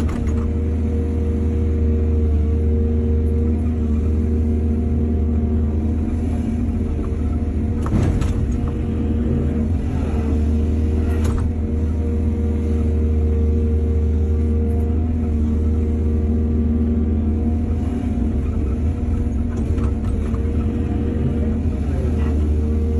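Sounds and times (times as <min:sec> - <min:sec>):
excavator diesel engine running: 0:00.0 - 0:22.9.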